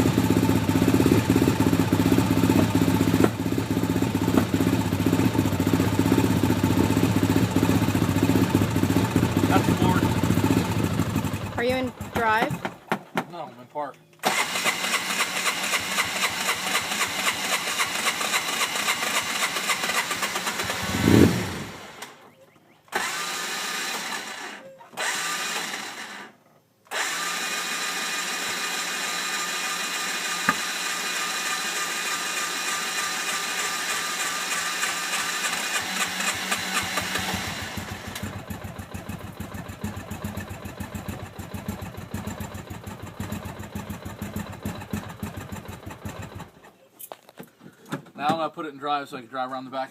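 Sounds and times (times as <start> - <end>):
engine starting and stalling: 14.2 - 22.3, 22.9 - 46.8.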